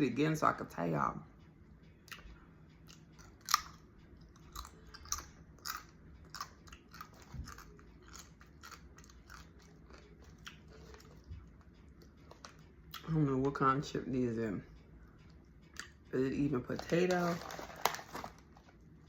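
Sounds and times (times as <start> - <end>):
person chewing crunchy chips: 2.9 - 13.0.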